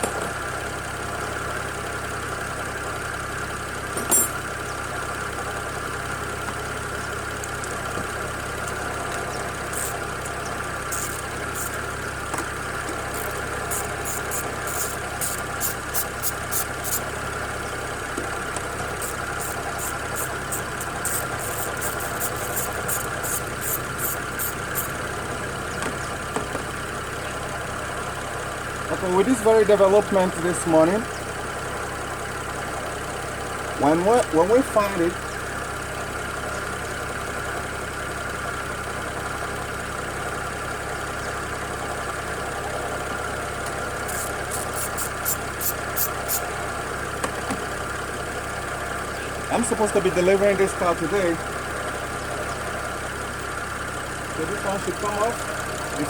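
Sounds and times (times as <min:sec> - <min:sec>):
car engine idling: 0:00.6 - 0:36.5
ratchet wrench clicking: 0:04.1 - 0:04.4, 0:09.7 - 0:11.9, 0:13.1 - 0:17.1, 0:19.0 - 0:25.0, 0:44.1 - 0:46.5
sharp click: 0:09.7 - 0:11.8, 0:13.2 - 0:17.1, 0:19.0 - 0:25.0, 0:44.1 - 0:46.5.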